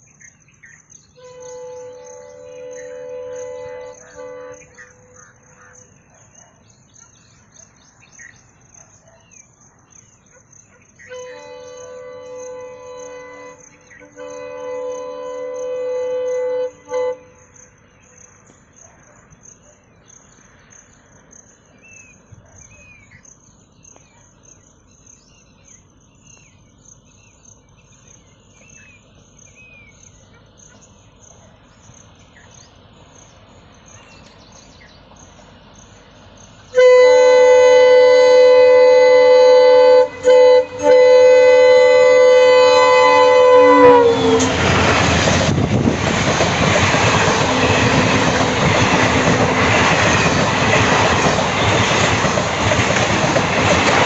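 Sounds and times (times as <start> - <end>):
birds chirping: 0.0 - 14.8, 16.4 - 36.8, 38.9 - 54.0
insects trilling: 0.0 - 54.0
locomotive horn blasts: 1.2 - 5.2, 11.0 - 17.5, 36.7 - 45.4.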